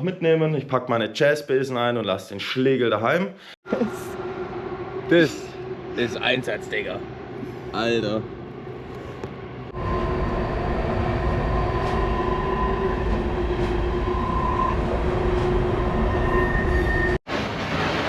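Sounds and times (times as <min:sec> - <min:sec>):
subway train rumbling: 0:09.7 - 0:18.0
rushing noise: 0:09.8 - 0:17.6.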